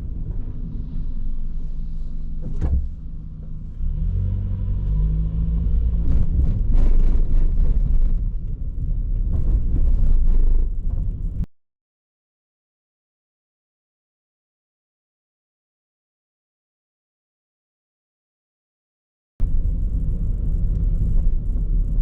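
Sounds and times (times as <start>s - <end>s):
car engine and road rumble: 0.0s - 11.5s, 19.4s - 22.0s.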